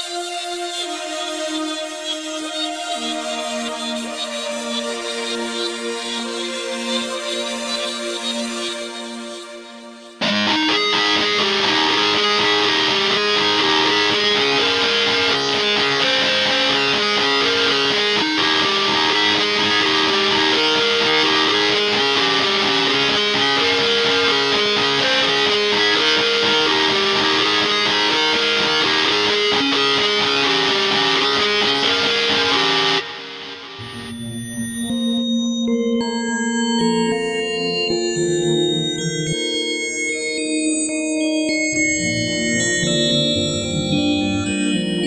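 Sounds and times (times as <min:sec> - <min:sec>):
synthesizer lead over stepping pattern: 0:10.2 - 0:39.4, 0:41.5 - 0:45.0
quieter synth tone: 0:33.7 - 0:36.0.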